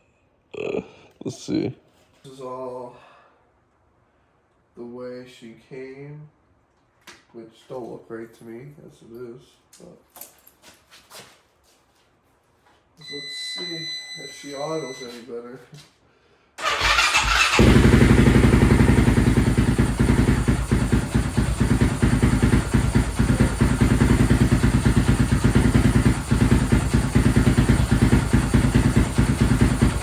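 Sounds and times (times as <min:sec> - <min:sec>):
electric starter cranking engine: 0:16.6 - 0:30.0
engine idling: 0:16.6 - 0:30.0.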